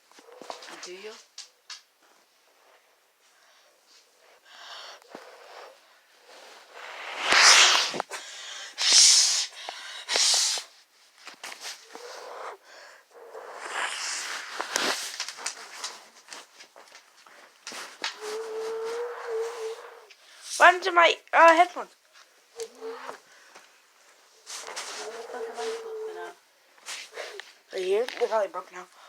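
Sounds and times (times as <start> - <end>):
person wheezing and hissing: 11.9 - 15.0.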